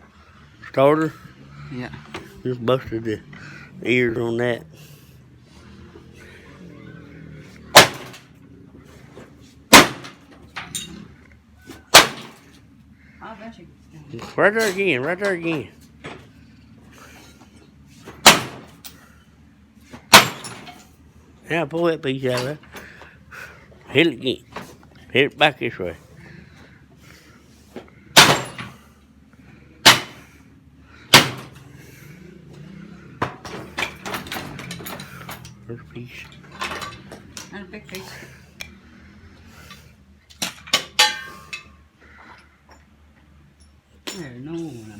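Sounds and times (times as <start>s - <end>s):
metal impacts on engine: 7.6s - 12.7s, 14.2s - 19.2s, 19.8s - 21.1s, 27.7s - 44.4s
metallic bangs on engine: 7.7s - 8.4s, 9.7s - 10.6s, 11.9s - 12.5s, 18.2s - 18.8s, 20.1s - 20.8s, 28.1s - 28.9s, 29.8s - 30.4s, 31.1s - 31.8s.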